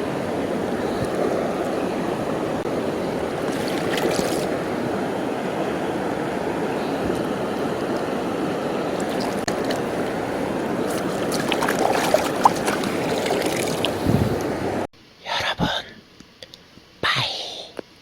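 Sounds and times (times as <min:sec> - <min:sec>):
stream flowing over rocks: 0:00.0 - 0:14.9.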